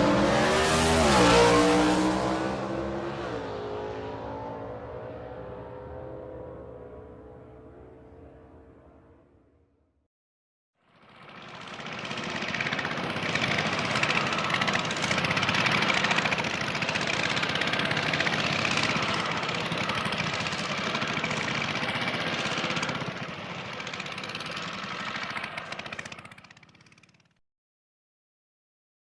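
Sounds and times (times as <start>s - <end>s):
motorcycle engine running: 10.9s - 27.4s.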